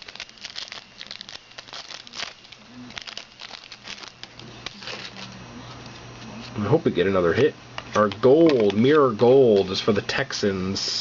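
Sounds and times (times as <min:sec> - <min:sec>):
card pack wrapper crinkling and tearing: 0:00.0 - 0:05.4.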